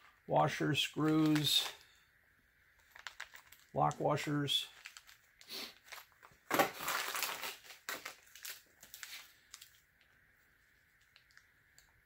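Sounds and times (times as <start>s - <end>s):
plastic bag crinkling: 1.0s - 1.9s, 2.8s - 3.7s, 4.6s - 11.9s.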